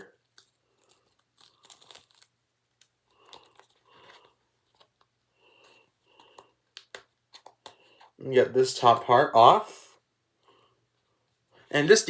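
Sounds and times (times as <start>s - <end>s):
plastic wrap crinkling: 0.0s - 5.1s.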